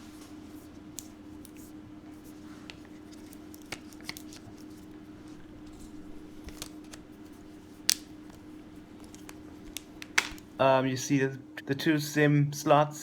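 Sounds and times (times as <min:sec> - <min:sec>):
faint steady hum: 0:00.0 - 0:13.0
smartphone handling clicks and taps: 0:07.8 - 0:08.4, 0:09.0 - 0:10.5.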